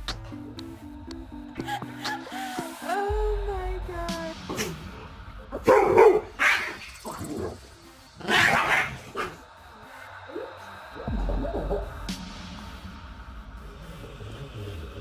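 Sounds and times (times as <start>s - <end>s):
dog barking: 5.6s - 6.8s, 8.2s - 9.4s.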